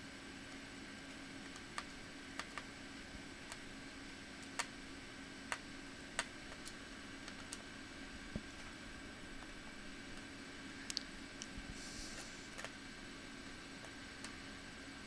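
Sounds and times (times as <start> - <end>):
faint steady hum: 0.0 - 15.0
light clicks of small parts: 10.9 - 11.6.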